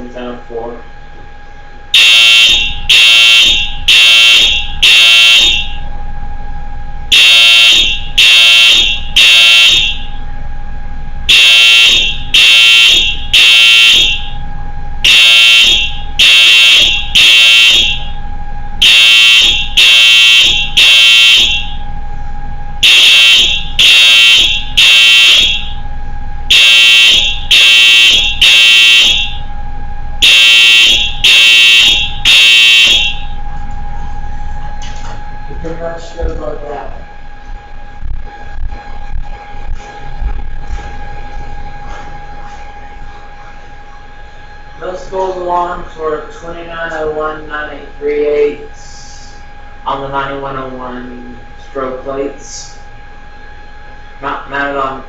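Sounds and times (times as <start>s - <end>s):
fire alarm horn blasts: 1.4s - 6.3s, 7.0s - 10.5s, 11.2s - 34.6s.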